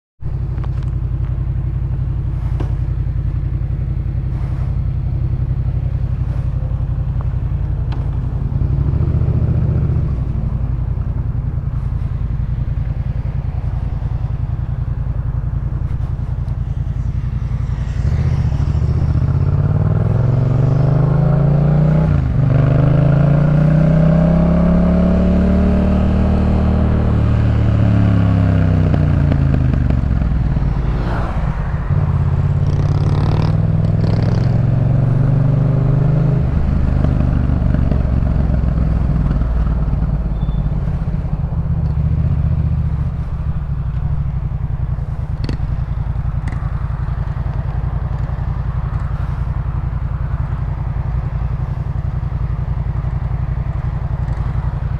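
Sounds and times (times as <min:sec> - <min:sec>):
motorcycle engine idling and revving: 0:00.2 - 0:54.9
motorcycle accelerating away: 0:04.0 - 0:54.9.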